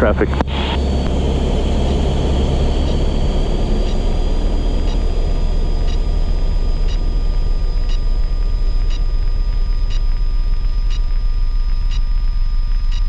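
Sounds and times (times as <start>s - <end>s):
propeller plane engine drone: 0.0s - 13.0s
faint high ticks: 7.8s - 13.0s.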